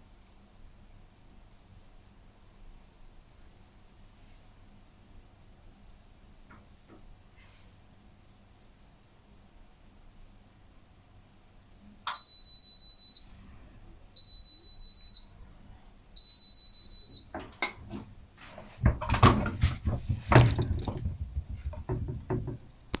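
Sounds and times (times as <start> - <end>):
washing machine long high beeps: 12.0 - 19.6
knocks and clatter: 17.3 - 23.0.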